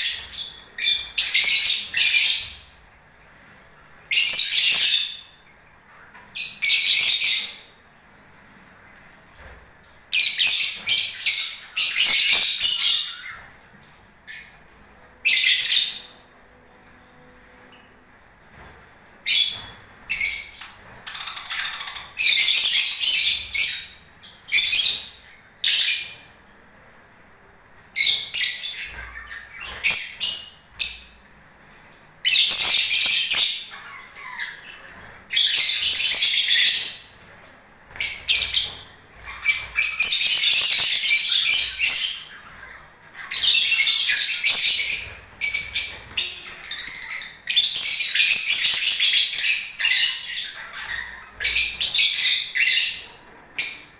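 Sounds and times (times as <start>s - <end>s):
lovebirds chattering and squawking: 8.9s - 17.9s, 18.5s - 26.4s, 27.9s - 31.3s, 32.2s - 53.9s.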